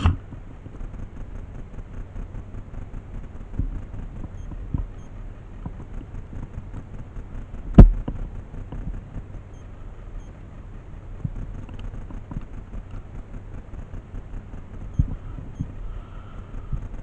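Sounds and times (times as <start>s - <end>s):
microphone handling noise: 0.0s - 0.4s
low rumbling wind: 0.0s - 17.0s.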